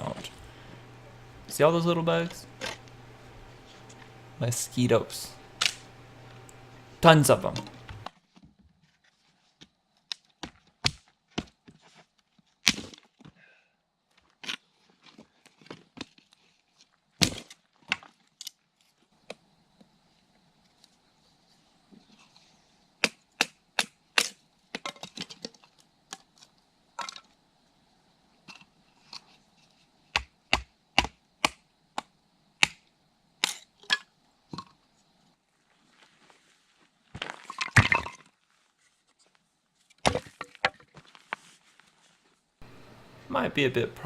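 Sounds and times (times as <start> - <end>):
sharp cracks and snaps: 5.5 - 6.7, 10.0 - 11.6, 12.2 - 13.3, 14.1 - 19.4, 23.0 - 27.4, 30.1 - 34.7
rustling crunch: 35.5 - 42.5.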